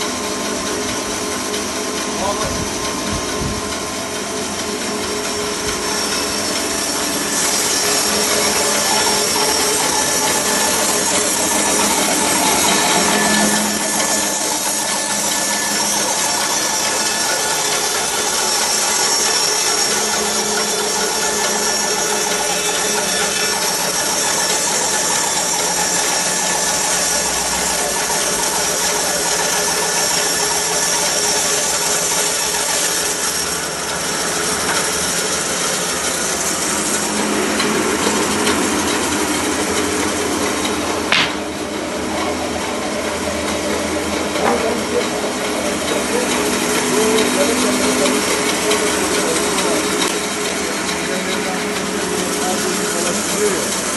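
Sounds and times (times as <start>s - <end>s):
power tool whining: 0.0s - 53.9s
sharp click: 41.1s - 41.5s.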